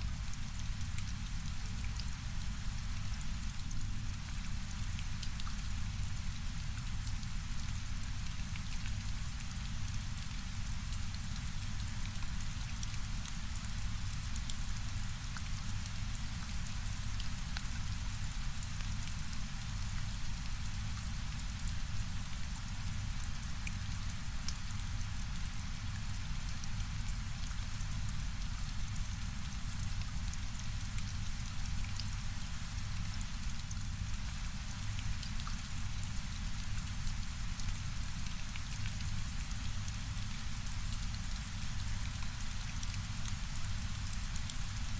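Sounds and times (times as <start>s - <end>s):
low rumble of brown noise: 0.0s - 44.9s
steady rain: 0.0s - 44.9s.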